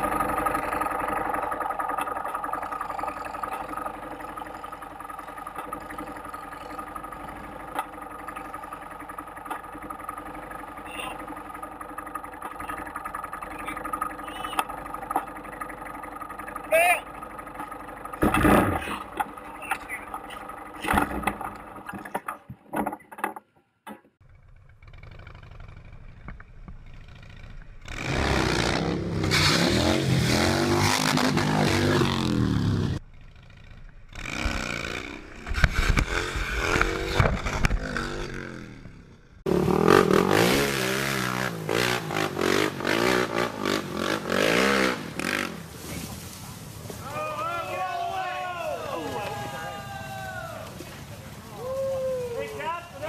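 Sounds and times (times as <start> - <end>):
motorcycle engines revving: 0.0 - 22.5, 24.2 - 53.0
crash scrapes and clatter: 34.1 - 38.9.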